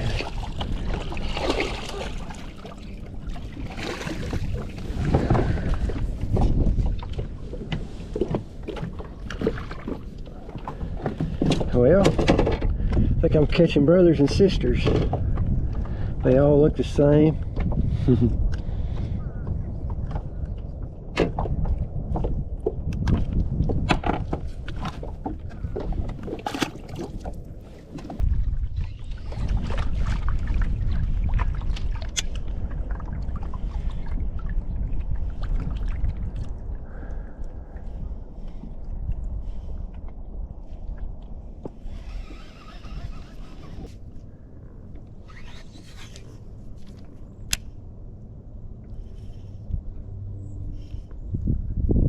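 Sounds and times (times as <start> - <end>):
knocks and rattles in boat: 0.0 - 36.5
wind rumbling on microphone: 0.0 - 52.0.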